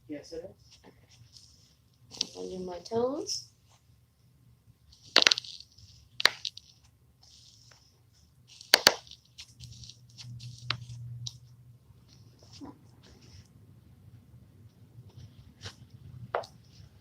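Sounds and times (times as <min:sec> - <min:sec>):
soft rustling: 0:00.4 - 0:14.0, 0:14.6 - 0:17.0
toe joints cracking: 0:04.9 - 0:07.5, 0:08.5 - 0:11.4.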